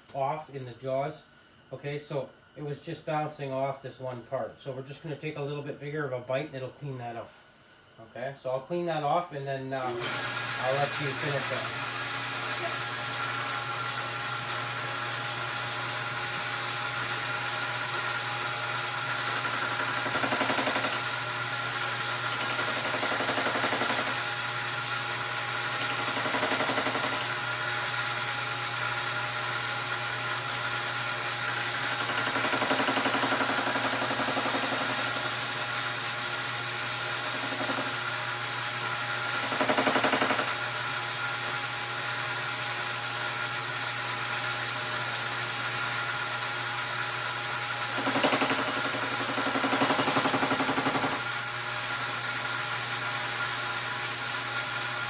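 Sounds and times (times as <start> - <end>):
lathe motor hum: 9.9 - 49.7
lathe bit cutting metal: 9.9 - 55.0.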